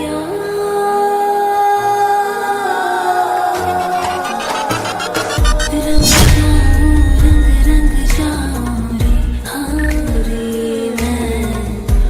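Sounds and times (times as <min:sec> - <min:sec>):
pop song: 0:00.0 - 0:12.0
repeating tone: 0:03.6 - 0:09.0
swoosh: 0:03.6 - 0:09.0
heavy bass: 0:03.7 - 0:09.4.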